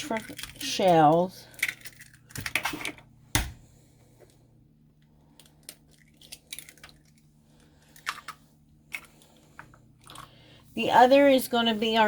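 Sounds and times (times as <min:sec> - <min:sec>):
egg cracking against a bowl: 0:01.5 - 0:02.7, 0:05.4 - 0:07.3
eggshell crackling: 0:05.2 - 0:10.6.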